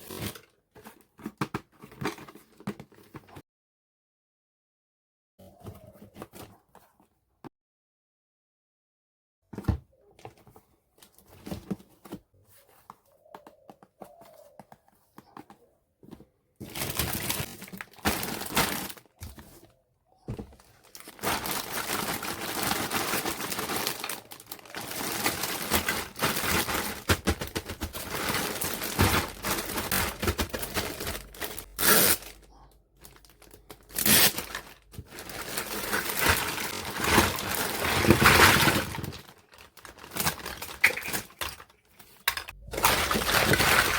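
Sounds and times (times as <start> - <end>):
plastic packaging crinkling: 16.6 - 19.3, 20.6 - 43.9.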